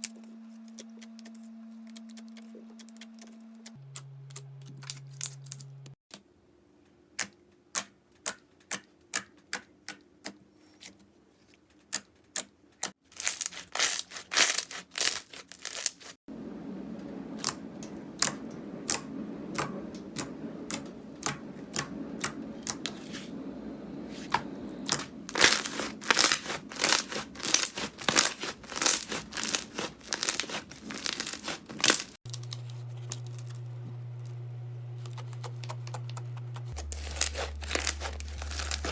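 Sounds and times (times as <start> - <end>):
squelchy slime rustle: 24.0 - 33.4, 36.8 - 38.9
slime popping and crackling: 24.9 - 32.2, 36.8 - 38.9.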